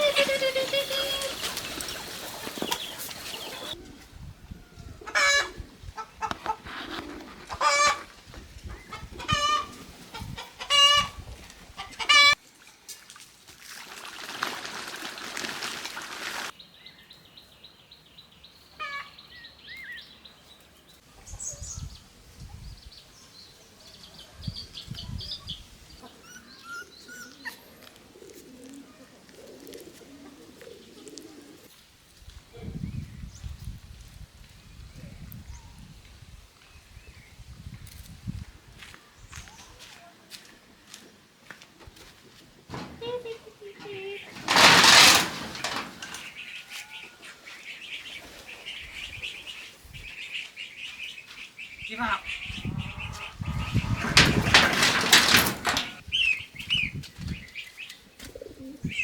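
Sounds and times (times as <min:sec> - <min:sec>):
chickens clucking: 0:00.0 - 0:04.1, 0:04.8 - 0:12.4, 0:42.7 - 0:47.4, 0:52.5 - 0:56.1.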